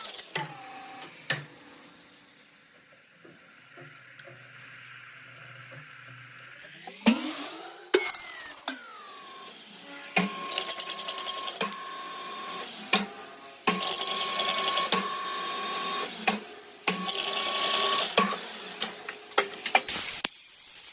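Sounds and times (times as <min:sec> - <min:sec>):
small machine chattering: 0:02.8 - 0:09.5, 0:10.2 - 0:12.1, 0:13.6 - 0:15.2, 0:16.2 - 0:18.4
sharp clicks: 0:07.9 - 0:08.8, 0:10.2 - 0:11.8.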